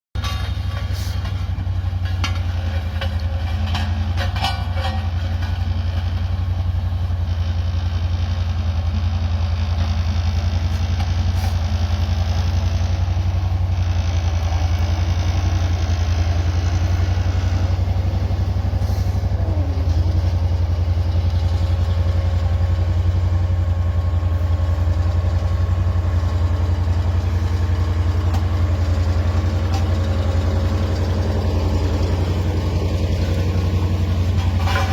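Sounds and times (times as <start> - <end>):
road roller diesel engine: 0.1 - 34.9.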